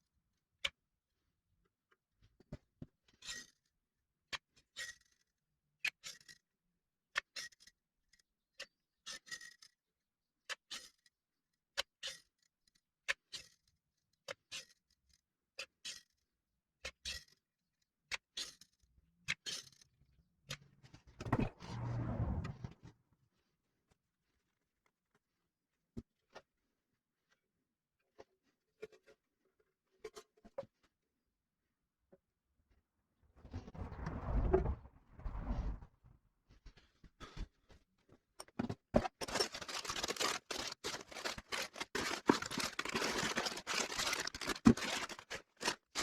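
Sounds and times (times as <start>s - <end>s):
scraping metal clatter: 39.0s - 46.0s.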